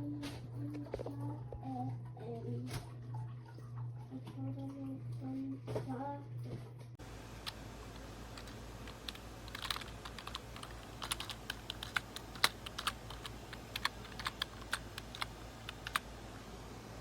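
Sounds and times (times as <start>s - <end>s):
keyboard key clicks: 8.4s - 16.0s.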